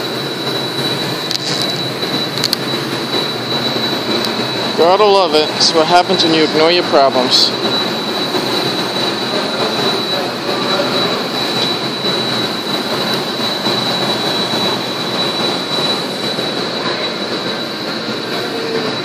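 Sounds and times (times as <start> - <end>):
mechanical noise with high whine: 0.0 - 19.0.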